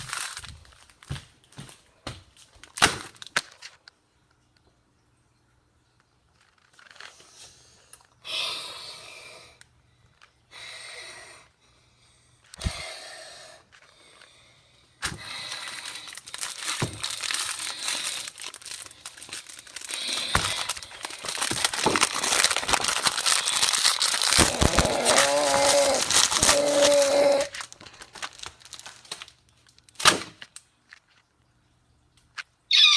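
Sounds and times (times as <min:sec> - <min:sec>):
packaging crinkling and tearing: 0:00.0 - 0:01.6, 0:02.4 - 0:03.9, 0:06.4 - 0:07.3, 0:15.0 - 0:31.3.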